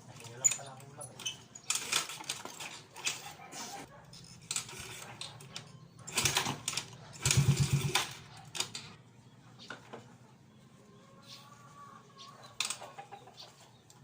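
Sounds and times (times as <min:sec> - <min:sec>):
scooter engine cranking: 0:00.2 - 0:03.2, 0:04.2 - 0:09.0.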